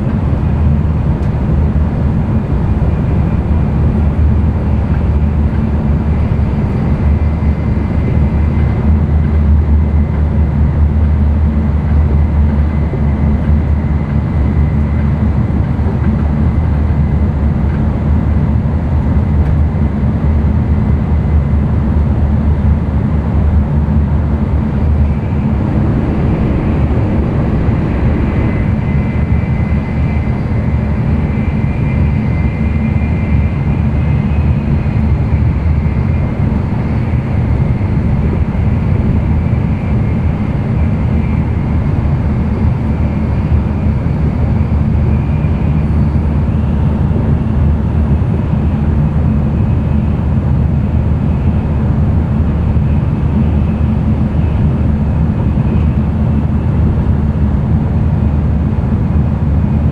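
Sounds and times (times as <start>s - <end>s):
faint high whine: 0.0s - 10.0s, 22.6s - 47.4s
train rumbling on rails: 0.0s - 59.9s.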